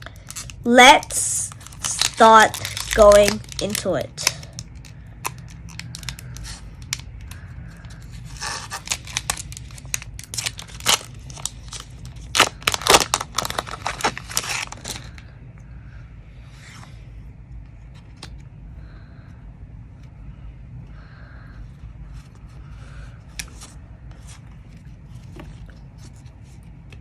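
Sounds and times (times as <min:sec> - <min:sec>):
foil wrapper tearing and crinkling: 0:00.0 - 0:07.0, 0:08.3 - 0:15.2.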